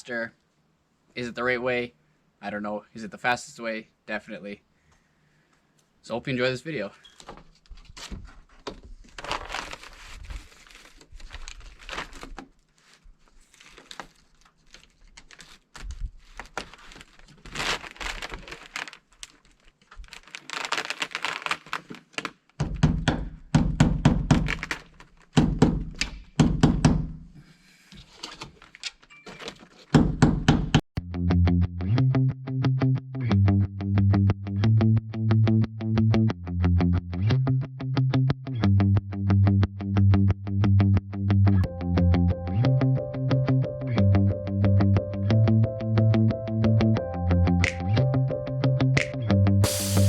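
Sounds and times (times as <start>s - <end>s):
sheets scraping and rustling: 9.1s - 22.3s
music: 31.0s - 50.0s.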